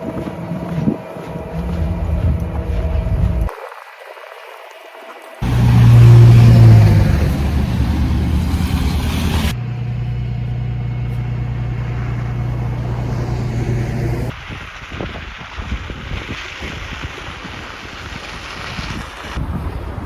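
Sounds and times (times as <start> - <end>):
vehicle engine humming: 1.1 - 3.5, 5.4 - 14.3
uneven gusty noise: 5.4 - 9.6.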